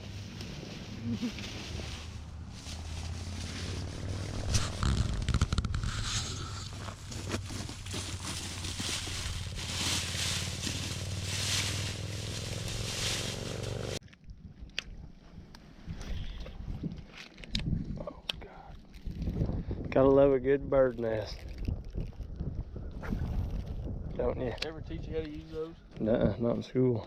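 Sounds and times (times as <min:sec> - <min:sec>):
crunching in dry leaves: 0:00.0 - 0:14.0
low rumble: 0:00.0 - 0:15.1.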